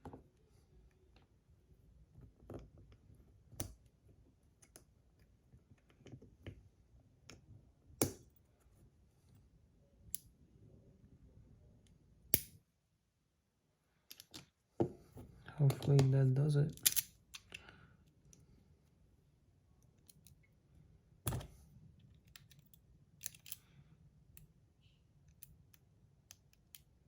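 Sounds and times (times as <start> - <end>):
small magnetic parts clicking: 16.8 - 17.7, 22.2 - 23.7.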